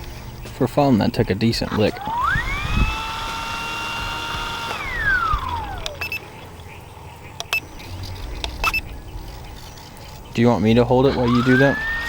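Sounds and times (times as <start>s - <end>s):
electric motor and propeller whine: 1.6s - 10.4s, 11.0s - 12.0s.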